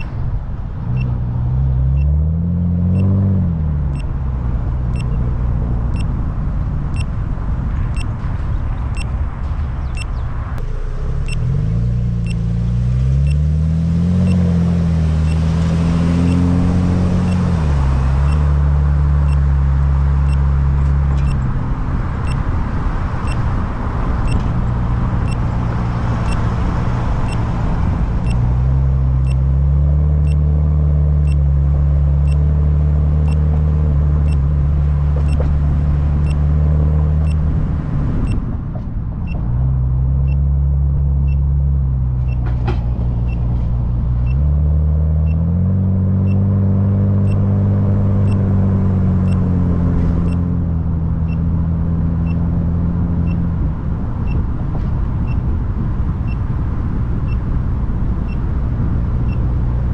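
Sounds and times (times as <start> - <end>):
car engine: 0.0 - 59.9
road noise: 0.0 - 59.9.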